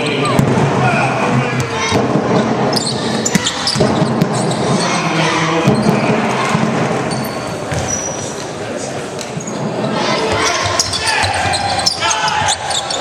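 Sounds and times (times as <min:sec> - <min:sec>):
crowd and player voices: 0:00.0 - 0:13.0
basketball bouncing on court: 0:03.2 - 0:04.6.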